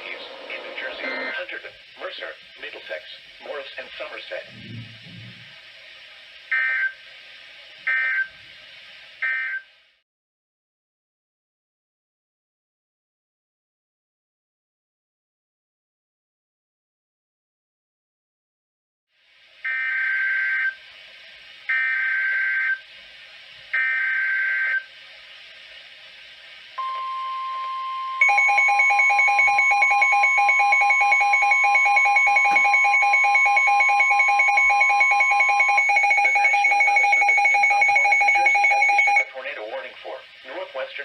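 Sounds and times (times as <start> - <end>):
rapidly pulsing electronic alarm: 26.8 - 39.3
steady single-pitch alarm tone: 26.8 - 39.3
screeching digital data tones: 28.2 - 39.3.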